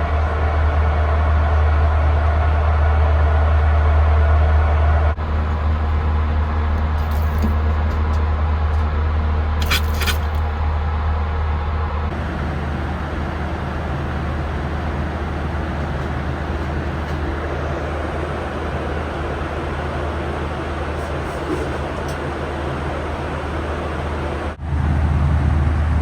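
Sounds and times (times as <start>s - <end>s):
airplane cabin drone: 0.0s - 26.0s
clicking rustle: 9.6s - 10.6s.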